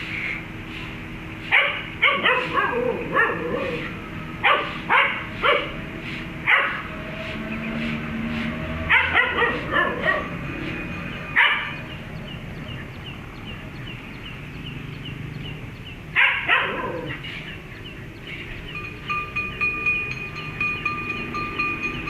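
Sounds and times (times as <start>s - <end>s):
dog barking: 1.5s - 5.8s, 6.5s - 6.9s, 8.9s - 10.4s, 11.4s - 11.8s, 16.2s - 17.2s.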